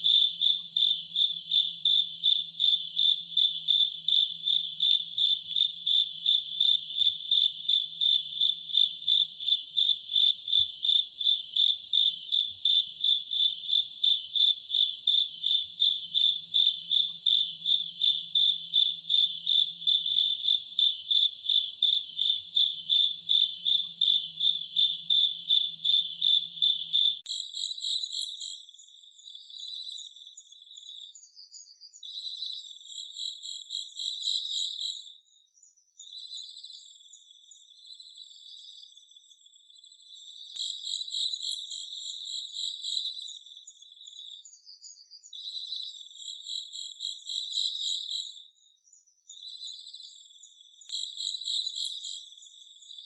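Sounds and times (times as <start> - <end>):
faint high insect call: 0.0 - 53.0
insect chirping: 0.0 - 53.0.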